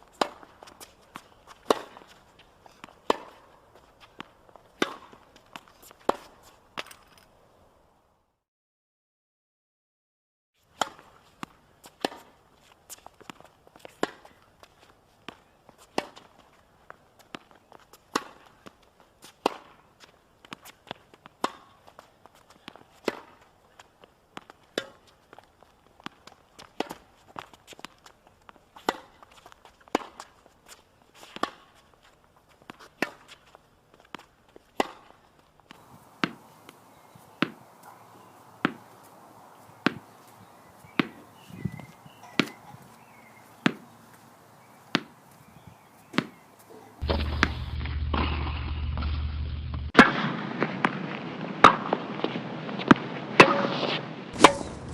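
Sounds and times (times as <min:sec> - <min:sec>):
tennis ball hits: 0:00.1 - 0:02.2, 0:02.8 - 0:03.5, 0:04.2 - 0:06.9, 0:10.8 - 0:12.4, 0:18.1 - 0:18.5, 0:19.3 - 0:19.8, 0:21.4 - 0:21.8, 0:22.7 - 0:23.4, 0:28.8 - 0:29.2, 0:29.9 - 0:30.3, 0:34.8 - 0:39.1, 0:39.8 - 0:40.3, 0:40.9 - 0:41.4, 0:42.2 - 0:43.9, 0:44.9 - 0:45.2, 0:46.1 - 0:46.4, 0:47.0 - 0:48.6, 0:52.8 - 0:54.9
tennis ball bouncing: 0:00.1 - 0:06.9, 0:10.8 - 0:12.4, 0:19.3 - 0:19.8, 0:20.5 - 0:21.8, 0:28.8 - 0:29.2, 0:34.1 - 0:35.1, 0:35.7 - 0:37.9, 0:38.6 - 0:39.0, 0:39.8 - 0:40.3, 0:40.9 - 0:41.2, 0:42.3 - 0:43.9, 0:44.9 - 0:45.3, 0:46.1 - 0:46.4
background hiss: 0:35.8 - 0:48.0.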